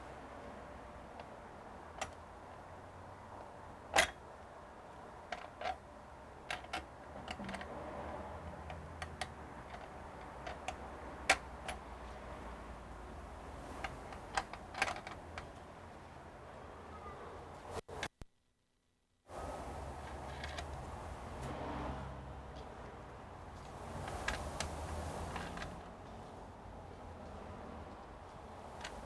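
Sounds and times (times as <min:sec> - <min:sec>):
small parts clicking and tapping: 0:01.1 - 0:02.3, 0:05.2 - 0:05.8, 0:06.4 - 0:07.8, 0:08.6 - 0:11.9, 0:13.7 - 0:15.7, 0:28.6 - 0:29.0.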